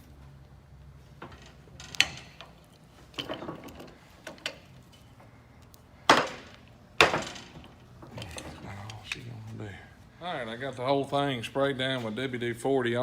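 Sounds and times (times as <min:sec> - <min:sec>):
tools knocking and clanking: 0:01.2 - 0:05.0, 0:06.1 - 0:08.6.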